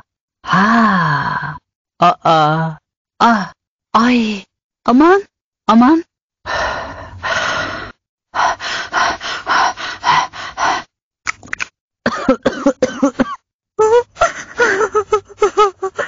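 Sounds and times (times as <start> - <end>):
synthetic coughing: 12.1 - 13.4.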